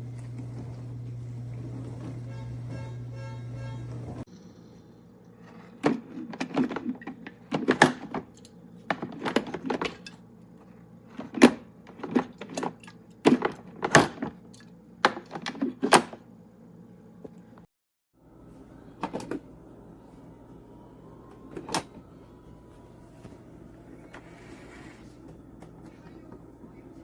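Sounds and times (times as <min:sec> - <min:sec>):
low steady hum: 0:00.0 - 0:27.0.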